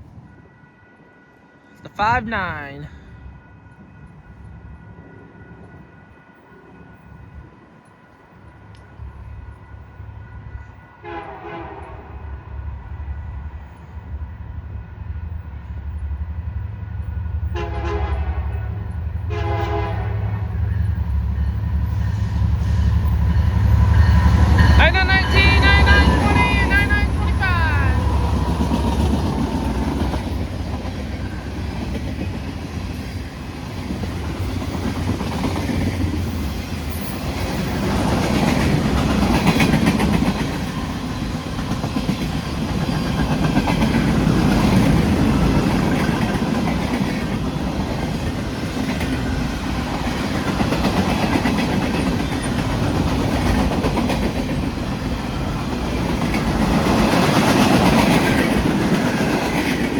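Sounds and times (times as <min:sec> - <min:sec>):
freight train wheels clicking: 0:20.5 - 0:59.9.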